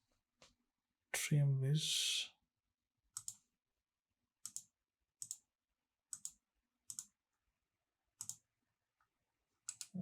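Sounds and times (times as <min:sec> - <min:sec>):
computer mouse clicks: 0:03.1 - 0:03.4, 0:04.4 - 0:05.5, 0:06.1 - 0:07.2, 0:08.2 - 0:08.5, 0:09.6 - 0:10.0.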